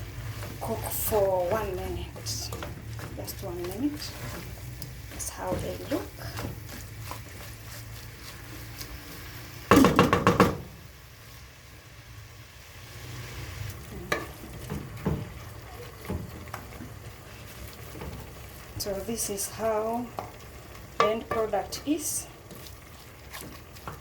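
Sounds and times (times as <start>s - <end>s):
food sizzling in a pan: 0.0s - 24.0s
utensil knocking against pan: 9.7s - 10.7s, 21.0s - 21.6s.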